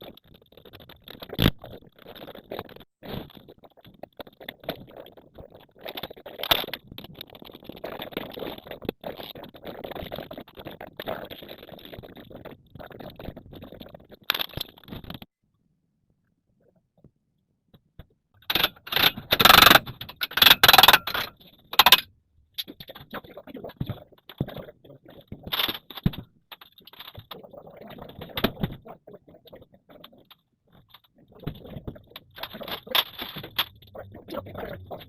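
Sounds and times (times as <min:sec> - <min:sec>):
clattering and scraping: 0:18.4 - 0:28.8, 0:30.0 - 0:35.0.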